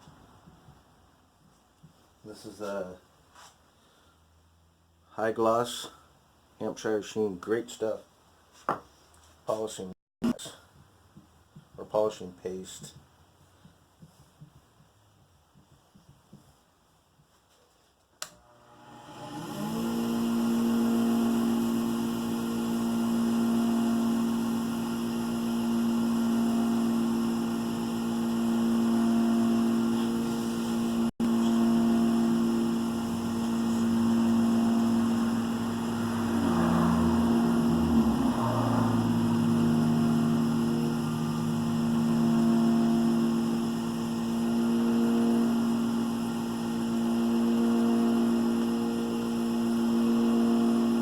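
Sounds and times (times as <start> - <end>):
wood lathe motor hum: 18.3 - 51.0.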